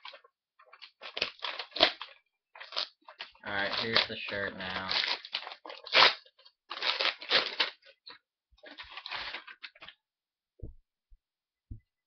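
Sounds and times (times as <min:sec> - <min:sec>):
crinkly packaging: 0:00.0 - 0:10.0
soft low thumps: 0:10.6 - 0:12.0.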